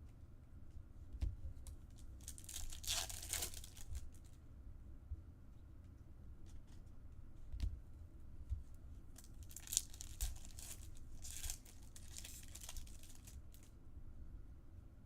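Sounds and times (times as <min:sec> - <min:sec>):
foil pack tearing: 0:02.2 - 0:04.0, 0:09.4 - 0:13.6
wrapper crinkling: 0:02.2 - 0:04.2, 0:09.2 - 0:13.7.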